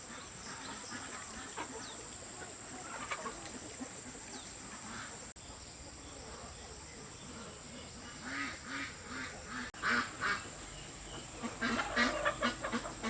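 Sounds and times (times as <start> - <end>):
poultry calling: 8.1 - 13.0.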